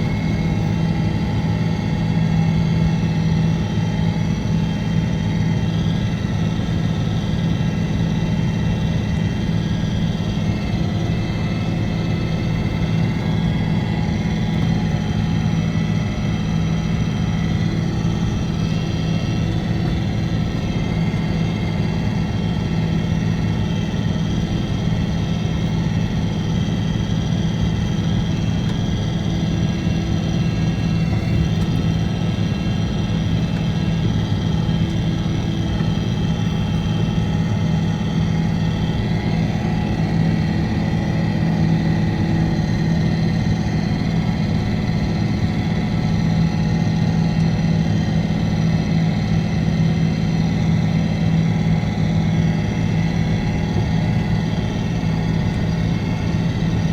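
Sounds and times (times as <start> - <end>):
diesel engine droning: 0.0 - 56.9.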